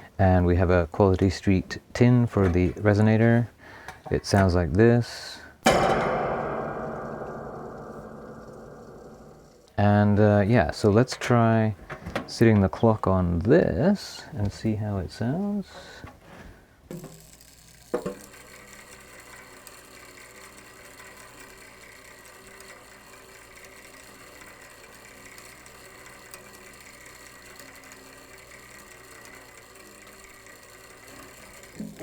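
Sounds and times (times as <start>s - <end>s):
clockwork gears whirring: 17.0s - 32.0s.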